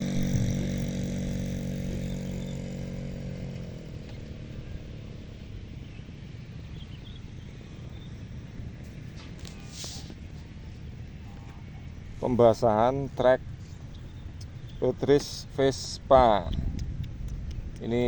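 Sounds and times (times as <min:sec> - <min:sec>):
small engine running: 0:00.0 - 0:12.2.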